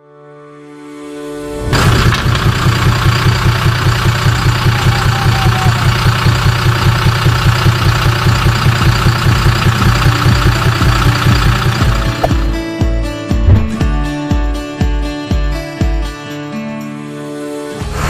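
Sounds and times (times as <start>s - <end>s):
diesel engine running: 1.7s - 12.6s.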